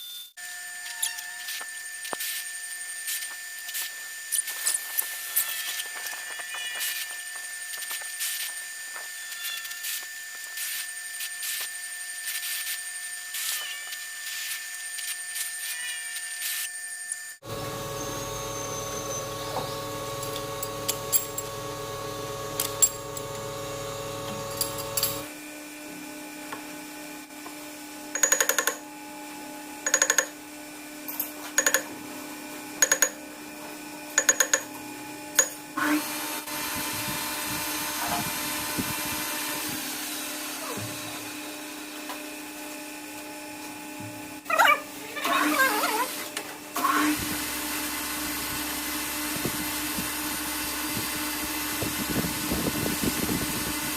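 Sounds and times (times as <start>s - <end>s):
metal lathe humming: 17.4s - 25.3s.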